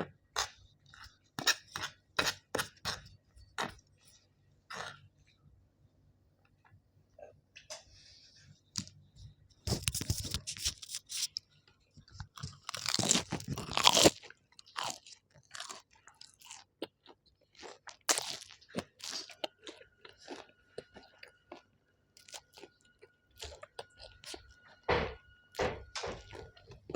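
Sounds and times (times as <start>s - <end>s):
food being chewed and crunched: 0.4s - 5.4s, 9.7s - 24.8s, 25.9s - 26.9s.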